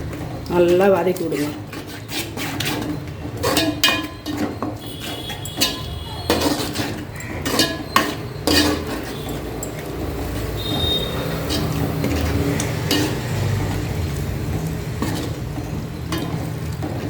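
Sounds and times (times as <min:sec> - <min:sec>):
spoon stirring in cooking pot: 0:00.0 - 0:17.0
spoon clinking against pot: 0:01.7 - 0:13.8.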